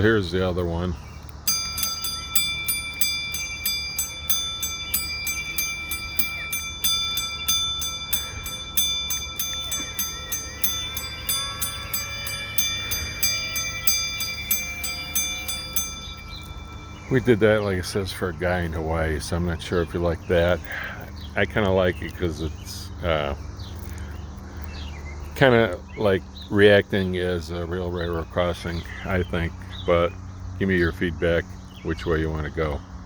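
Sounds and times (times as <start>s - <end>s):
railroad crossing bell dinging: 1.3s - 22.4s.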